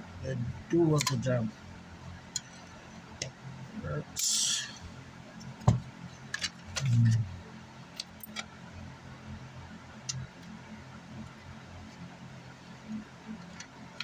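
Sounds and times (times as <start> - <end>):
faint low hum: 0.0 - 14.0
dull low thump: 5.6 - 5.9.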